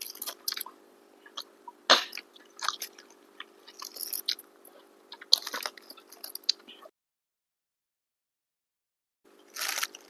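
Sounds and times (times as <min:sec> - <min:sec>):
person chewing crunchy food: 0:00.0 - 0:06.9, 0:09.5 - 0:10.0.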